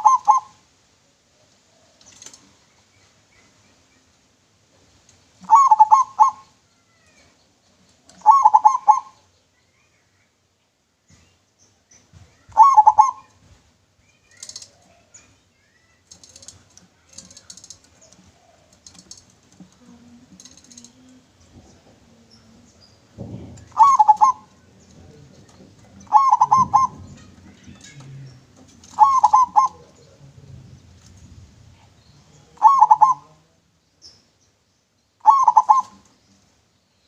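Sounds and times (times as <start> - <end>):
dove cooing: 0.0 - 0.6, 5.4 - 6.6, 8.1 - 9.2, 12.5 - 13.4, 16.1 - 31.0, 31.8 - 33.5, 35.2 - 36.1
small birds chirping: 0.0 - 37.0.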